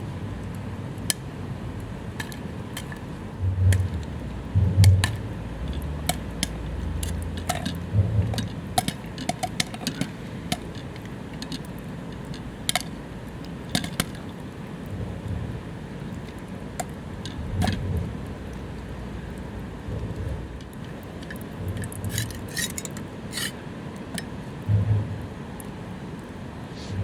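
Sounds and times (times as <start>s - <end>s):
popcorn popping: 2.0s - 14.4s, 16.2s - 18.8s
dull low thumps: 3.4s - 6.0s, 6.8s - 8.4s, 24.7s - 25.3s.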